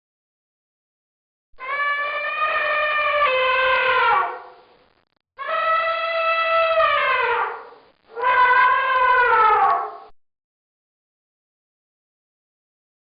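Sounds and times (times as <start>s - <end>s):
animal's long brassy call: 1.6s - 4.5s, 5.4s - 10.1s.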